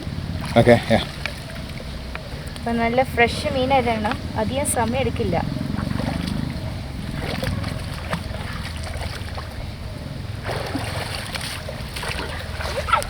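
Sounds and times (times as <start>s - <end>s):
faint clicks: 0.0s - 9.6s
low steady rumble: 0.0s - 13.0s
river water splashing: 0.0s - 13.0s.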